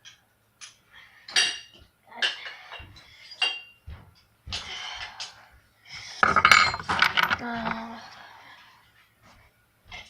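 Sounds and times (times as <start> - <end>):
metal parts clinking: 6.2 - 7.8
metal rattling: 6.2 - 7.9.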